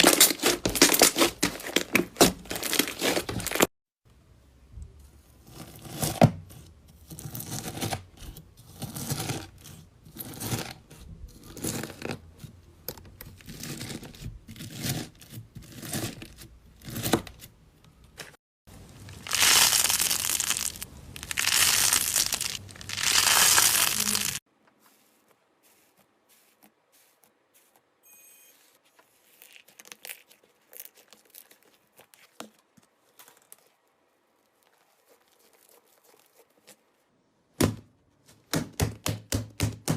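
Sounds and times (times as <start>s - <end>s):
slime squished by hand: 19.1s - 24.4s.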